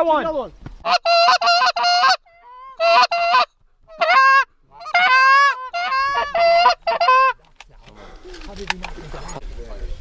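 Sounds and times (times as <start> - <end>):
duck call quacks: 0.9 - 7.4.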